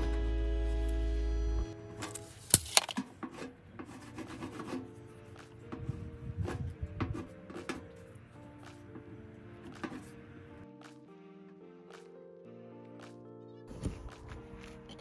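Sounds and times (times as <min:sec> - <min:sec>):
background music: 0:00.0 - 0:15.0
clicks and scrapes of food handling: 0:02.1 - 0:04.9.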